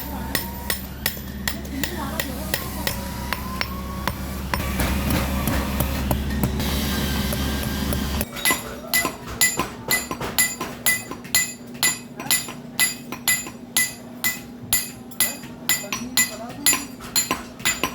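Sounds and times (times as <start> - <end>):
machine humming: 0.0 - 8.3
hammer striking metal: 0.0 - 17.9.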